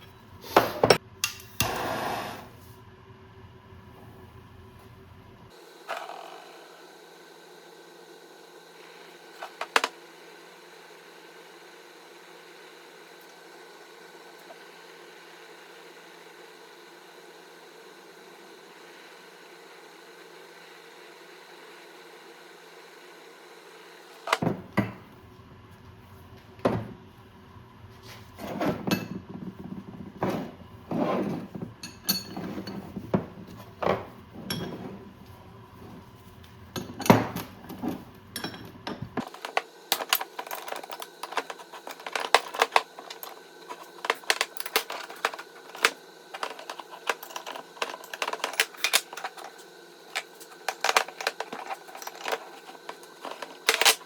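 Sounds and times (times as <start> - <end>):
metal tools clinking on workbench: 38.4 - 54.0.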